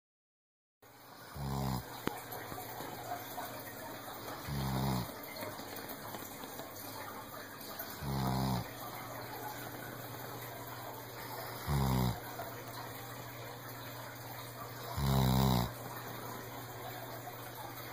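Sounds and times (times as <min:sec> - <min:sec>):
dog snoring: 0:01.1 - 0:02.2, 0:04.2 - 0:05.4, 0:07.7 - 0:09.0, 0:11.2 - 0:12.5, 0:14.6 - 0:15.9.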